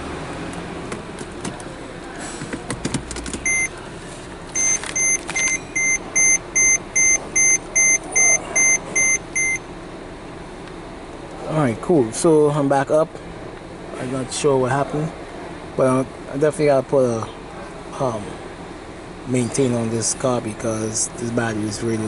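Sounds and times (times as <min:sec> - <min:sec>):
electronic beeper beeps: 0:03.4 - 0:03.7, 0:04.6 - 0:09.6.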